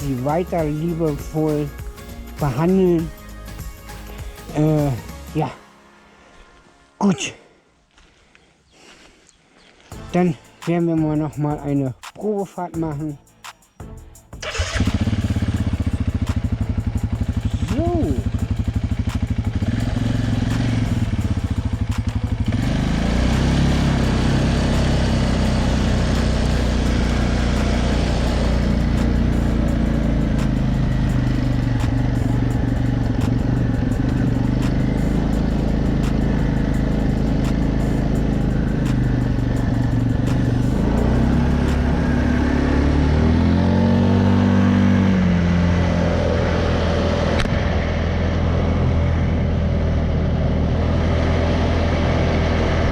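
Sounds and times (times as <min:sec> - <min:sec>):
quad engine revving: 0:00.0 - 0:01.7, 0:14.4 - 0:52.9.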